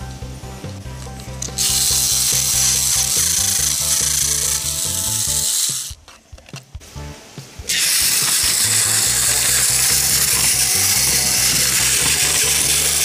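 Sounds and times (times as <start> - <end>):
background music: 0.0 - 13.0
toy train motor whirring: 1.4 - 6.2, 7.7 - 13.0.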